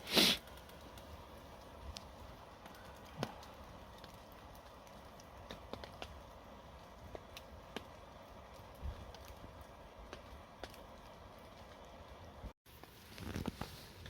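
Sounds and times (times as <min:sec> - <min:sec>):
sharp fire pops: 0:00.0 - 0:11.9
campfire crackling: 0:00.0 - 0:14.0.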